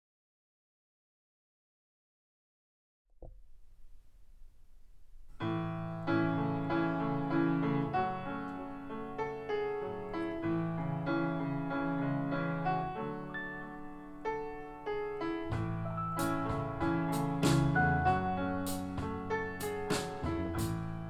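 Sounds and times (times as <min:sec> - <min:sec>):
piano music over loudspeakers: 0:05.3 - 0:21.0.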